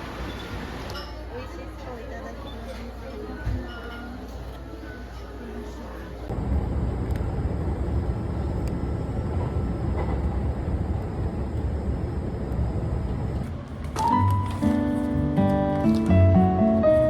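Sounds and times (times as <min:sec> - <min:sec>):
music: 0:14.0 - 0:17.0.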